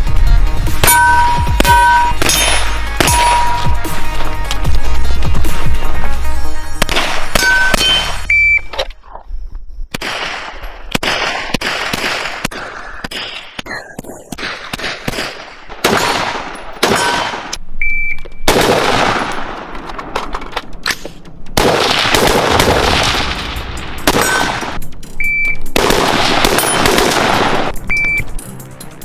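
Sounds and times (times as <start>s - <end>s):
rapid gunfire: 0.8s - 3.9s, 6.8s - 8.2s, 10.0s - 13.6s, 14.4s - 17.5s, 18.5s - 19.7s, 21.6s - 25.0s, 25.7s - 27.8s
single gunshots: 0.8s - 3.9s, 6.8s - 8.3s, 9.9s - 13.6s, 14.4s - 17.6s, 18.5s - 19.7s, 21.6s - 24.8s, 25.8s - 27.8s
short high beeps: 7.4s - 8.8s, 17.8s - 18.5s, 25.2s - 25.7s, 27.9s - 28.3s.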